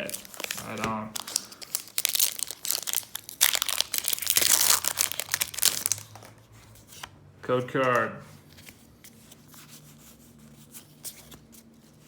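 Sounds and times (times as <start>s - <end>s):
foil wrapper crinkling and tearing: 0.0s - 6.3s.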